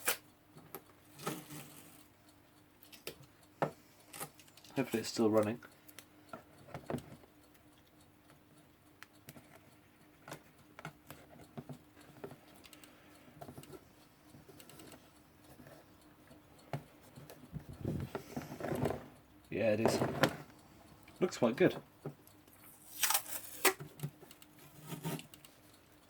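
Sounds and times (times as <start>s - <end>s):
small clicks: 9.0s - 13.8s.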